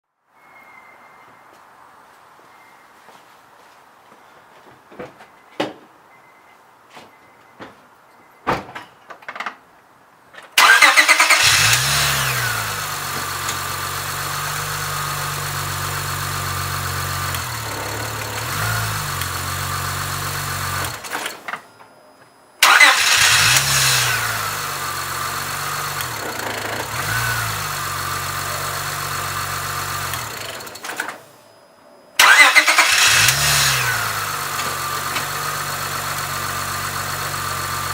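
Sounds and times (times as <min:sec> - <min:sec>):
car engine cranking and starting: 0:10.6 - 0:21.7, 0:22.6 - 0:31.4, 0:32.2 - 0:37.9
car engine idling: 0:11.4 - 0:21.6, 0:22.6 - 0:31.4, 0:32.2 - 0:37.9.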